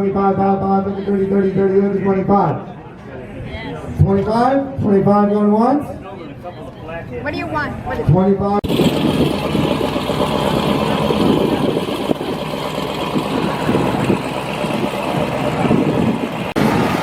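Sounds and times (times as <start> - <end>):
car engine running: 8.6 - 17.0.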